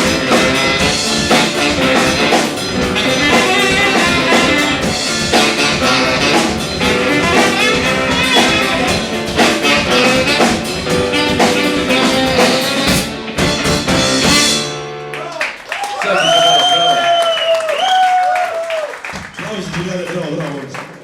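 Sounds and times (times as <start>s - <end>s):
live band with drums and brass: 0.0s - 15.2s, 19.0s - 20.0s.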